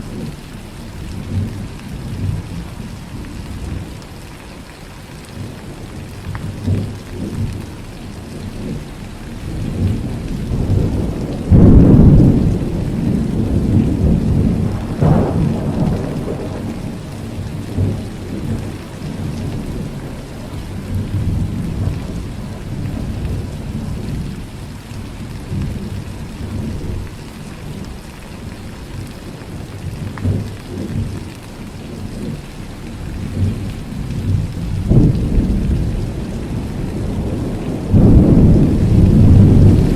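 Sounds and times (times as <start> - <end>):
heavy rain falling: 0.0 - 39.9
rolling thunder: 9.4 - 28.0, 32.1 - 39.9.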